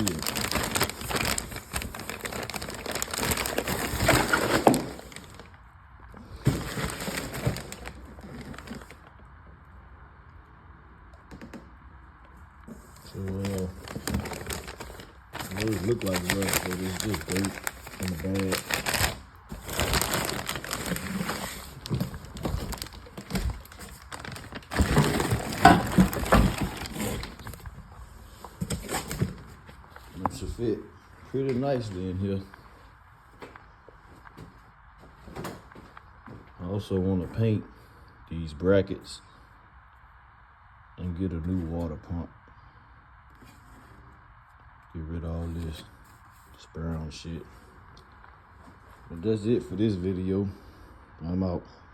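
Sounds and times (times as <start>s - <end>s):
metal parts rustling in plastic bag: 0.0s - 5.5s, 6.4s - 8.9s, 13.0s - 27.6s.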